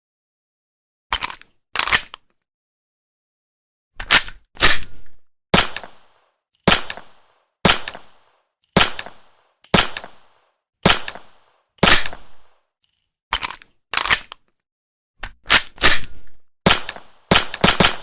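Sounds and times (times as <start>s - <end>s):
pistol shots: 5.5s - 12.6s, 16.7s - 18.0s.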